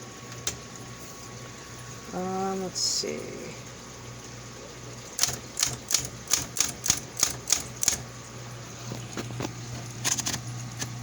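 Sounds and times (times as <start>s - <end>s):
typewriter motor hum: 5.1s - 8.1s, 8.9s - 11.0s
typewriter key strikes: 5.2s - 8.0s.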